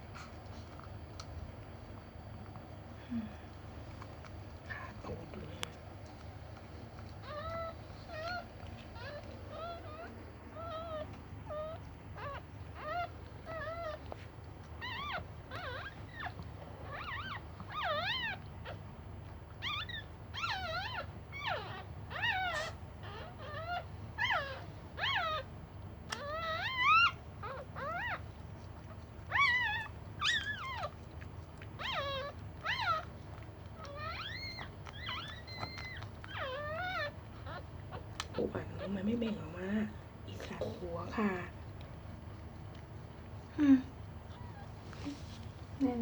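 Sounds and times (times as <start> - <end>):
dog whining: 7.0 - 18.8, 19.5 - 39.3, 42.2 - 46.0.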